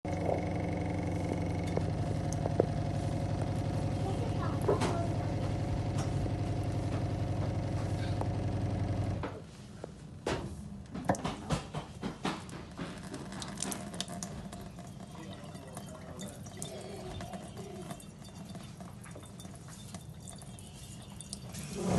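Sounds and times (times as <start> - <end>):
filter motor humming: 0.0 - 9.4, 13.0 - 21.9
faint water: 12.8 - 21.9.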